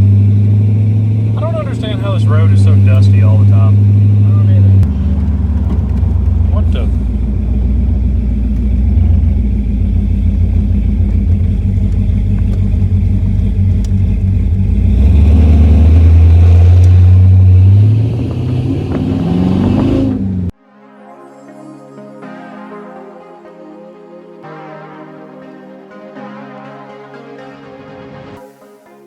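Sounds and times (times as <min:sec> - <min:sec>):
car engine droning: 0:00.0 - 0:20.6
soft synth music: 0:20.5 - 0:29.0.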